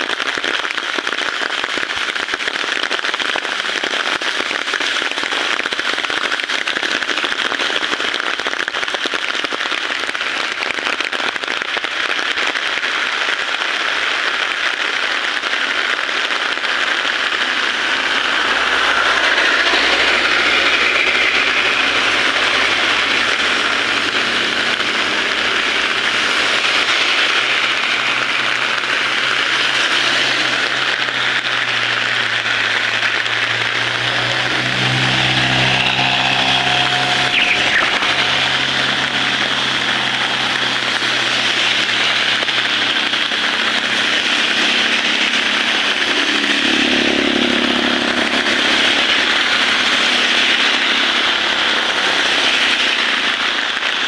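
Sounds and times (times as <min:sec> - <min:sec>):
heavy rain falling: 0:11.6 - 0:54.0
vehicle engine approaching: 0:15.4 - 0:54.0.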